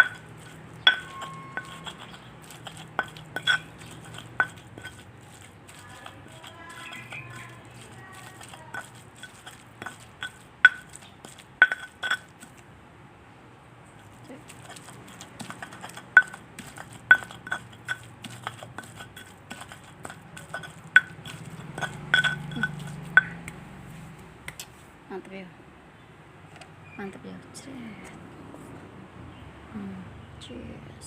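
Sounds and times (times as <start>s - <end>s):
metal utensil clinking on cookware: 0.0s - 12.5s, 14.5s - 23.4s.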